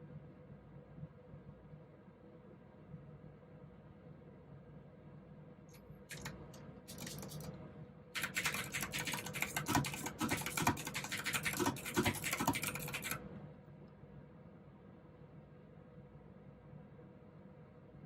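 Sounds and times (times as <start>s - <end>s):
clicky mechanical keyboard typing: 6.1s - 7.5s, 8.2s - 13.2s.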